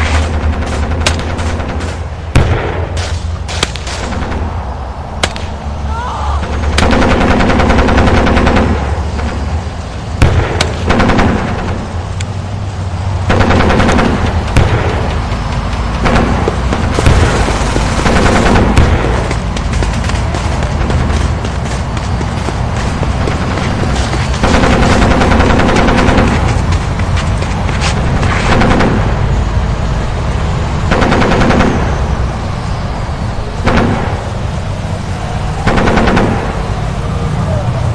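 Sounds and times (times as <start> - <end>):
low battlefield rumble: 0.0 - 37.9
machine-gun fire bursts: 6.5 - 9.4, 10.2 - 11.8, 13.2 - 15.0, 16.0 - 19.3, 24.3 - 26.7, 35.6 - 36.6
machine-gun burst: 24.4 - 26.6.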